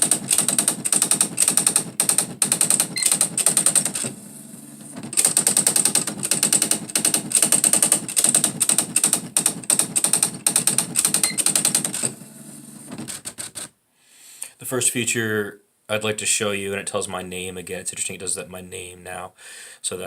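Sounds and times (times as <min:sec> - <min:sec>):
electronic typewriter printing: 0:00.0 - 0:13.7.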